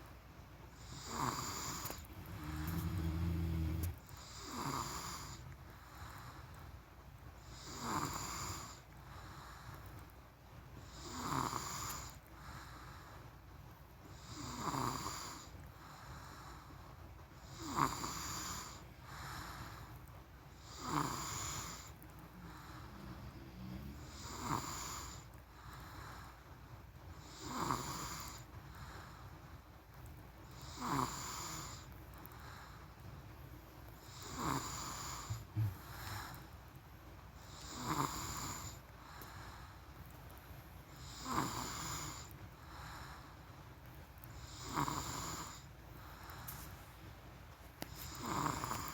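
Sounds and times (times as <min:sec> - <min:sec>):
person snoring: 0:00.8 - 0:05.4, 0:20.6 - 0:25.2.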